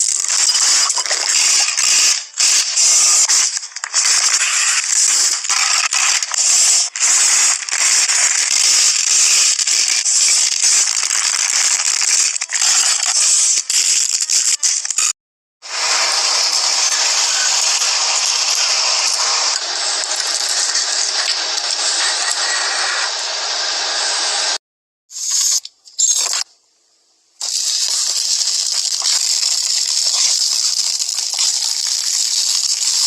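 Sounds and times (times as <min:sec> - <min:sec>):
dense crackling and crunching: 0:00.0 - 0:22.7, 0:27.4 - 0:33.0.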